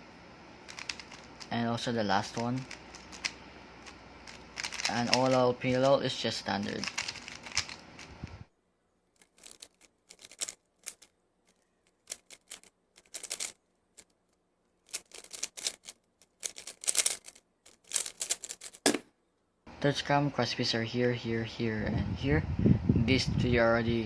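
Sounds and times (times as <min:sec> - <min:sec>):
puzzle cube plastic clicks: 0:00.7 - 0:01.5, 0:02.2 - 0:06.0, 0:06.6 - 0:08.2, 0:09.2 - 0:19.0.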